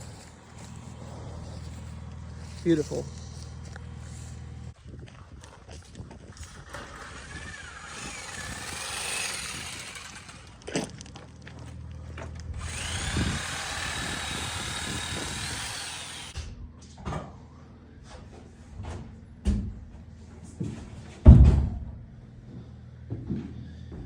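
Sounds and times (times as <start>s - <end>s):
power tool whining: 6.4s - 11.0s, 12.5s - 16.4s
heavy thump: 21.2s - 21.9s.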